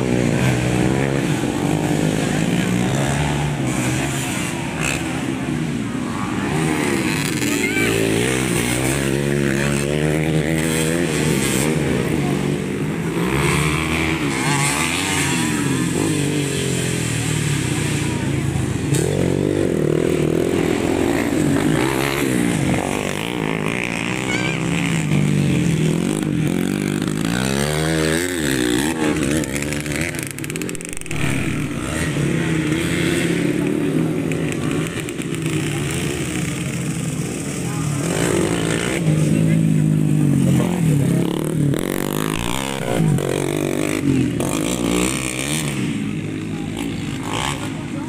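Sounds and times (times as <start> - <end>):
motorcycles revving hard: 0.0 - 48.0.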